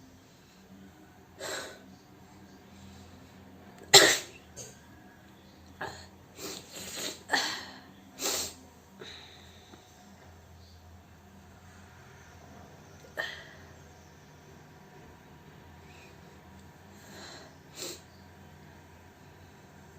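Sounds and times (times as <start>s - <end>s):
person sneezing and coughing: 3.9s - 4.7s.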